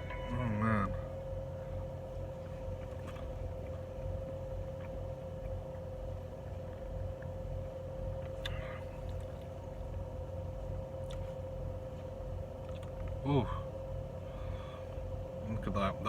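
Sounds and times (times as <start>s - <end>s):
faint constant tone: 0.0s - 16.0s
steady low hum: 0.0s - 16.0s.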